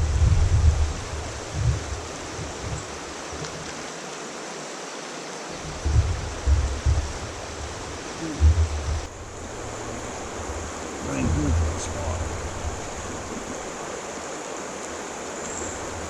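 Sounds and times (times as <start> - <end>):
river water rushing: 0.0 - 16.0
brief low rumbles: 5.8 - 9.2.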